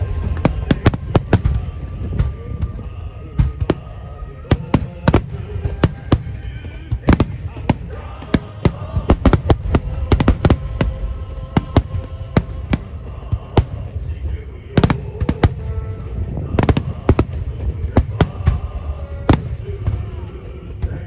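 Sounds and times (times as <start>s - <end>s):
fireworks bangs and cracks: 0.0s - 21.0s
low rumble of booms: 0.0s - 21.0s.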